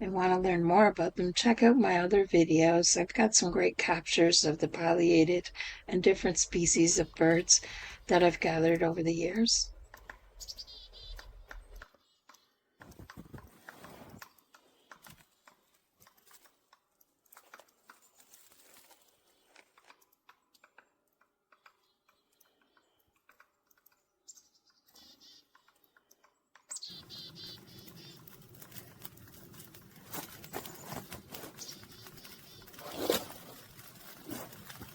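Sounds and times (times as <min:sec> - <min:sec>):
faint clicks and crackles: 0:00.4 - 0:34.9
rustling: 0:17.3 - 0:20.0, 0:26.9 - 0:34.9.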